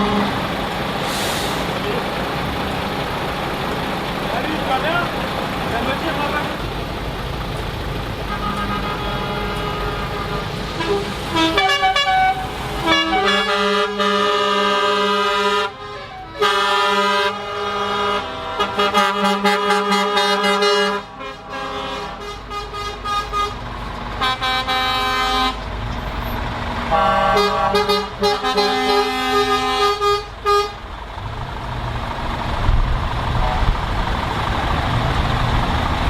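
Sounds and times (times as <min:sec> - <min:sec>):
truck air horns blowing: 0:00.0 - 0:01.7, 0:08.2 - 0:26.3, 0:26.9 - 0:30.9, 0:33.4 - 0:33.8
truck engines running: 0:00.0 - 0:36.0.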